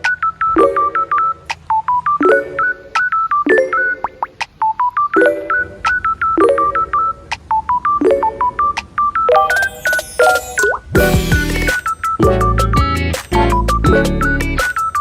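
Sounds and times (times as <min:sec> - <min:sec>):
electronic music with beeping notes: 0:00.0 - 0:15.0
struck chord: 0:09.4 - 0:11.8.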